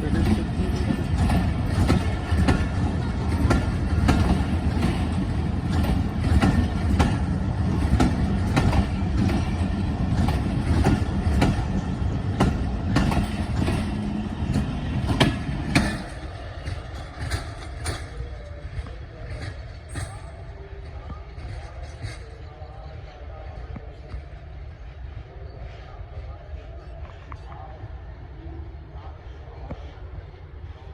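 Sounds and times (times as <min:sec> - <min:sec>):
train wheels clacking over rail joints: 0:00.0 - 0:22.5
passenger train rumbling past: 0:00.0 - 0:30.9.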